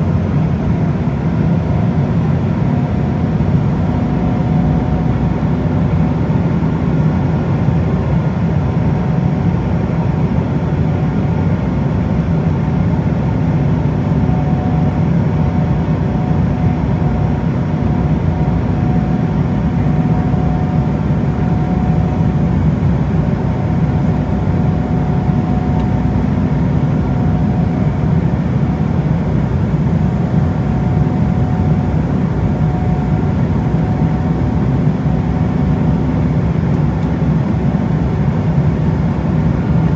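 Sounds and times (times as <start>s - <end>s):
airliner cabin drone: 0.0s - 39.9s.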